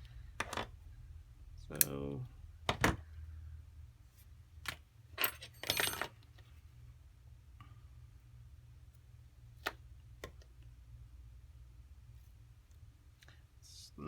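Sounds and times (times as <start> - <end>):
low steady hum: 0.0 - 14.0.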